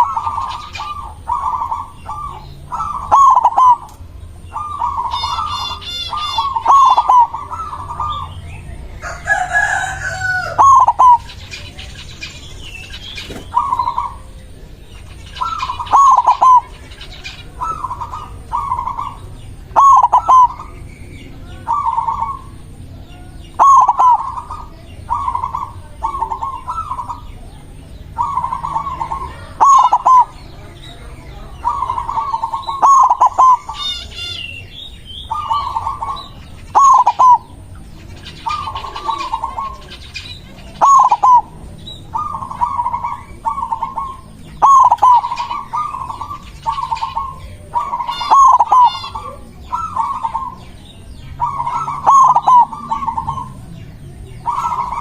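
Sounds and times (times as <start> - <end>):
bird calling: 0.0 - 55.0
dove cooing: 0.0 - 55.0
small birds chirping: 0.0 - 55.0.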